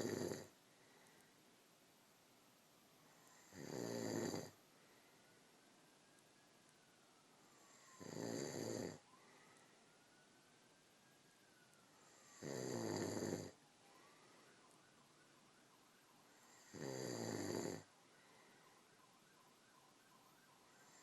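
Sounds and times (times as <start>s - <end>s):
loud snores: 0.0s - 0.5s, 3.2s - 4.6s, 7.6s - 9.0s, 12.1s - 13.6s, 16.5s - 17.9s.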